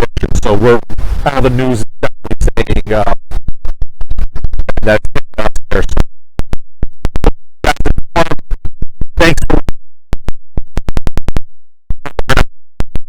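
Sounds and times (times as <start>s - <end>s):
record scratching: 0.0s - 6.1s, 7.1s - 9.7s, 12.0s - 12.5s.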